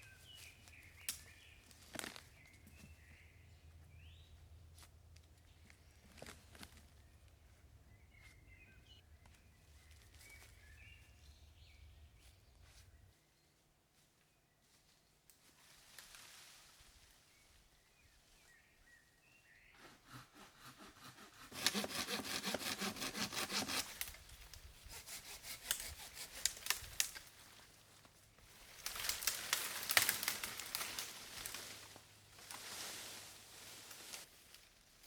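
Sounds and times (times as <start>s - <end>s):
hand saw cutting wood: 19.8s - 27.2s.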